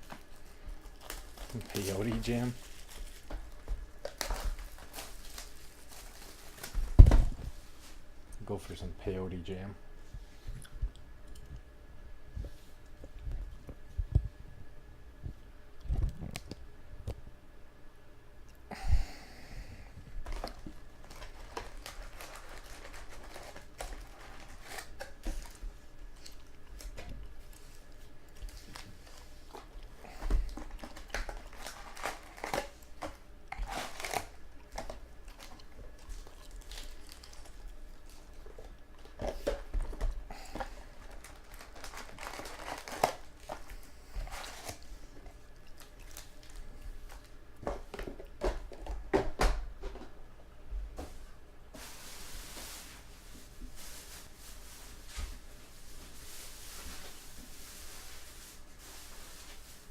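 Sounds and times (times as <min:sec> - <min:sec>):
foil wrappers tearing and crinkling: 0:00.0 - 0:07.1, 0:20.2 - 0:45.0, 0:45.8 - 0:47.3.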